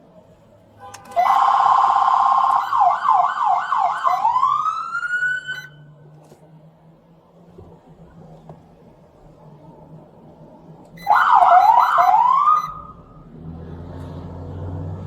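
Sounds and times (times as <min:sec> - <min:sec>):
police siren: 0:01.0 - 0:06.0, 0:11.0 - 0:13.4.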